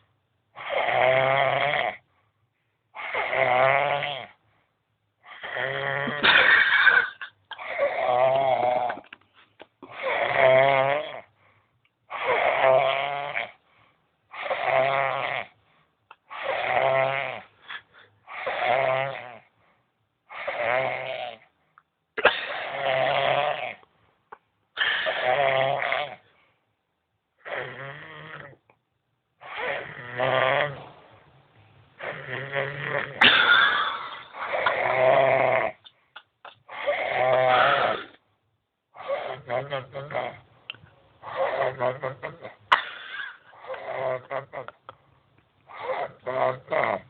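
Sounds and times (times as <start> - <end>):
man snoring: 0.6 - 2.0, 3.0 - 4.4, 5.2 - 6.3, 7.6 - 9.0, 9.9 - 11.3, 12.1 - 13.6, 14.4 - 15.6, 16.3 - 17.5, 18.3 - 19.5, 20.4 - 21.5, 22.6 - 23.8, 25.0 - 26.2, 27.4 - 28.6, 29.5 - 30.9, 32.0 - 33.4, 34.2 - 35.8, 36.7 - 38.2, 39.0 - 40.4, 41.2 - 42.6, 43.5 - 44.8, 45.7 - 47.0.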